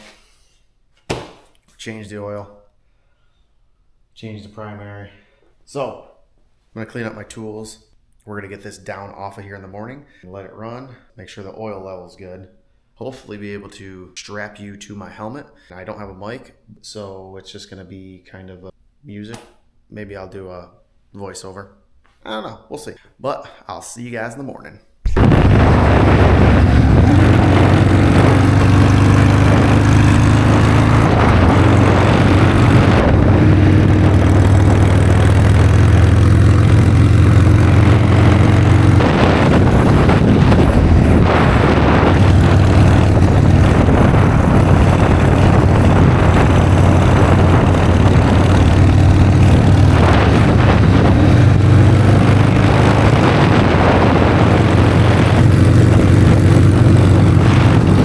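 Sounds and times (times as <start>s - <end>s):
broad rushing noise: 25.1s - 58.0s
motorcycle engine running: 25.1s - 58.0s.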